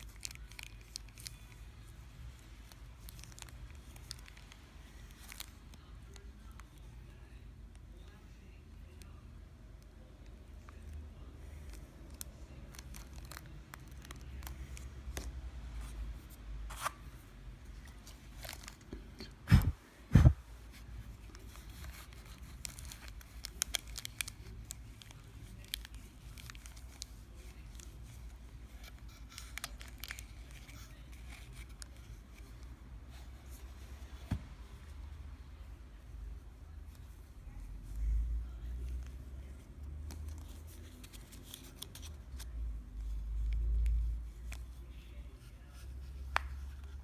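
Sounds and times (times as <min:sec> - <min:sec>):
plastic wrapper crinkling: 0:00.0 - 0:06.6, 0:11.7 - 0:14.9, 0:21.2 - 0:32.6.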